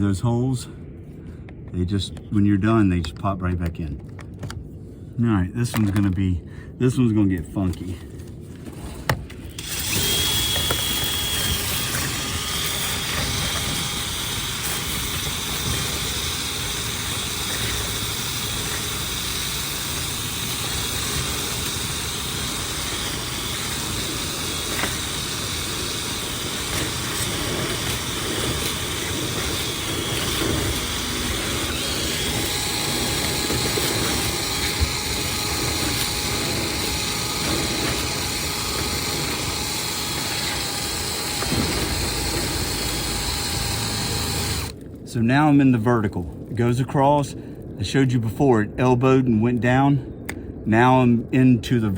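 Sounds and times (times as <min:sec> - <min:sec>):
cordless drill whining: 0:08.7 - 0:44.8.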